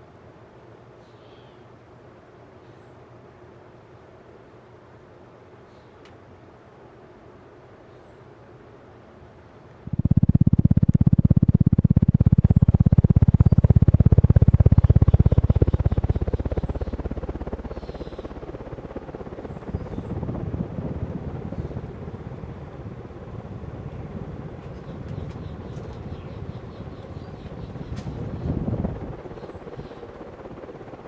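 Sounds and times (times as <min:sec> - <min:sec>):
ceiling fan throbbing: 0:09.4 - 0:31.0.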